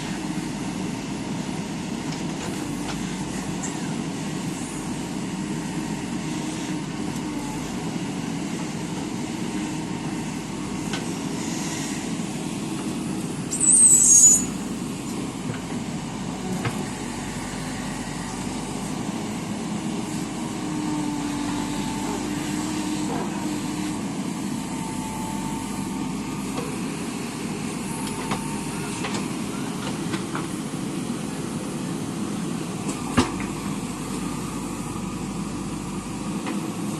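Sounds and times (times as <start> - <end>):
diesel engine running: 0.0 - 36.9
high-pitched squeal: 13.5 - 15.0.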